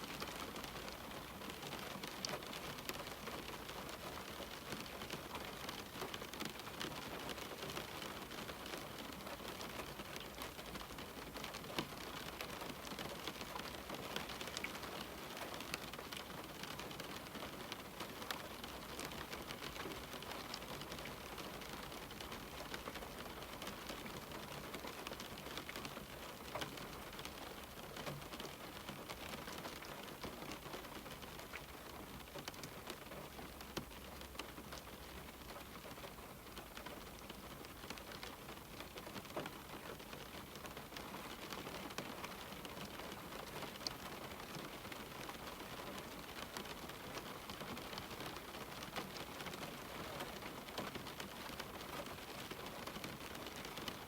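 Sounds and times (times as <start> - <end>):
rain on a window: 0.0 - 54.0.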